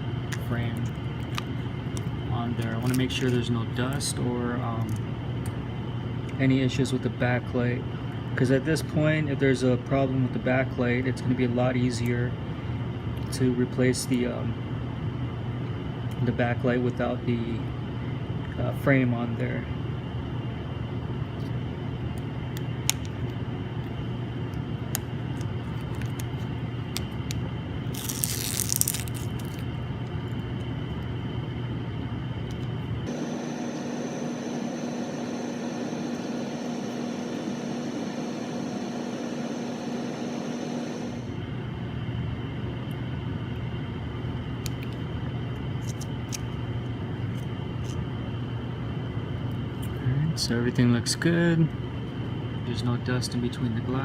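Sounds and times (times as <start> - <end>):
electrical hum of equipment: 0.0 - 54.0
higher-toned hum: 23.8 - 41.8.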